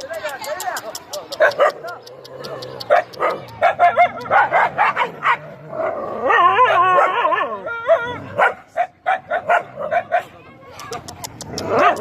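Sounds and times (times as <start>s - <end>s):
dogs barking: 1.2s - 10.4s, 11.4s - 12.0s
dog yelping cry: 6.2s - 10.0s.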